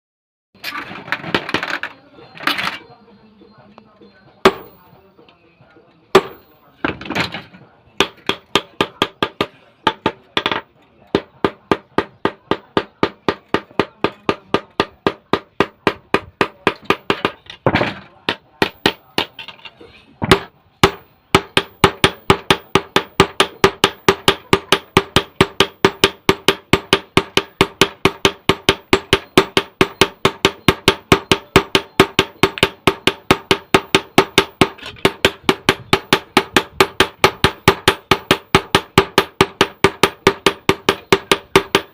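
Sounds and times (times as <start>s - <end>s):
hammer striking metal on anvil: 4.4s - 4.9s, 6.2s - 6.5s, 20.2s - 41.9s.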